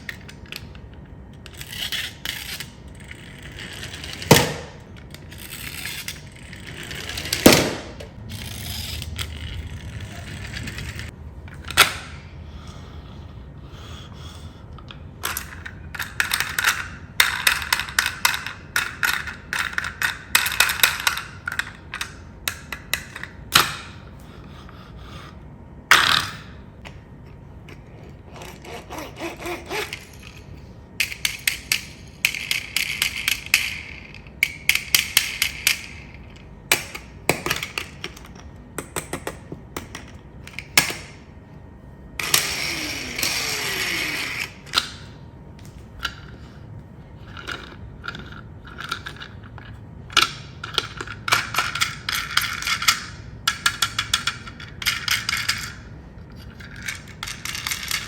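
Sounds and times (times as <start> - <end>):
small hard parts clicking and rattling: 0.0 - 12.1, 14.8 - 23.9, 28.3 - 41.1, 47.2 - 58.0.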